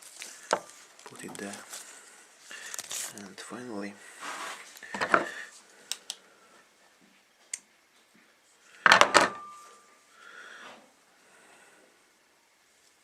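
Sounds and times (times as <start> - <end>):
light clicks of small parts: 5.8 - 6.2
brief metallic ring: 9.2 - 9.9.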